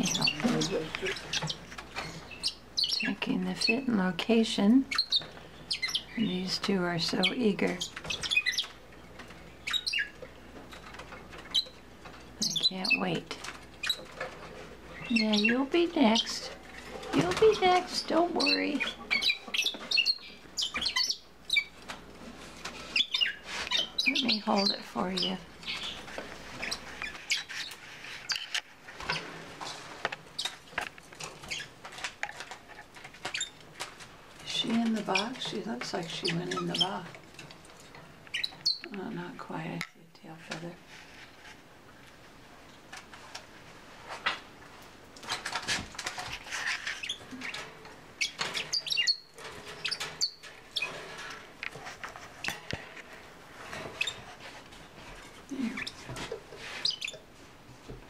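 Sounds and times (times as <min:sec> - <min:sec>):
parakeets chirping: 0:00.0 - 0:04.0, 0:04.6 - 0:22.0, 0:22.7 - 0:30.7, 0:31.3 - 0:33.8, 0:34.4 - 0:37.2, 0:38.3 - 0:38.9, 0:45.4 - 0:51.4, 0:53.6 - 0:54.4, 0:55.5 - 0:57.3
birds scratching and tapping: 0:00.0 - 0:58.0.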